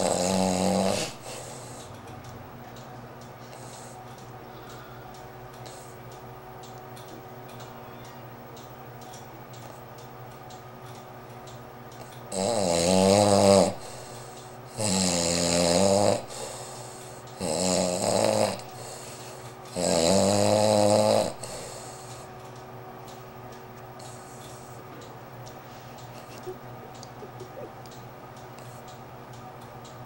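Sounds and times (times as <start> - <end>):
man snoring loudly: 0.0 - 1.4, 12.3 - 14.0, 14.7 - 16.5, 17.4 - 18.7, 19.7 - 21.6.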